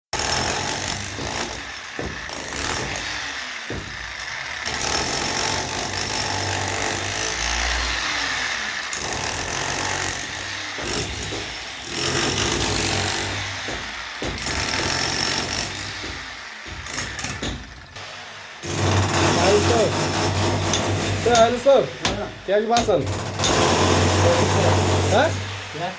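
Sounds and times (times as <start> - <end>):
power tool running: 0.2 - 25.9.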